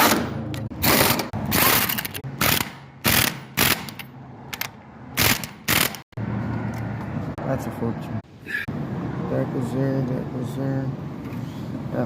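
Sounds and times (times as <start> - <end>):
ratchet wrench clicking: 0.8 - 6.0.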